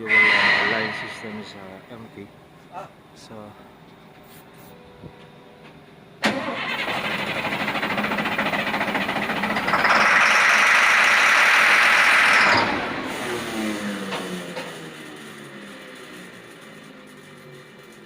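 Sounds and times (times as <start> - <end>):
diesel engine cranking by starter: 6.2 - 18.0.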